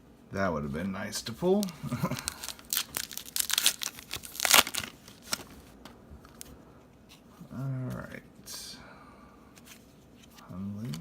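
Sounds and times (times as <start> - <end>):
wrapper crinkling and tearing: 1.5 - 5.6.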